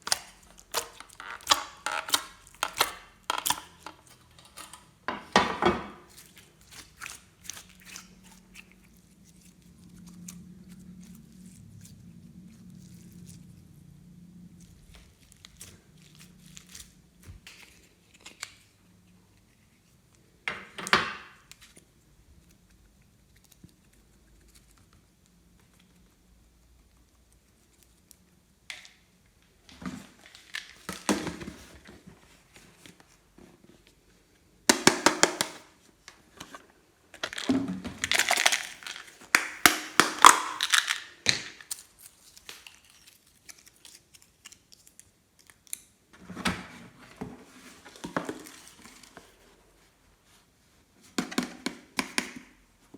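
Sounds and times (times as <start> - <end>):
hands squishing slime: 0.0 - 5.0, 6.0 - 13.9, 14.5 - 18.8, 38.0 - 44.9.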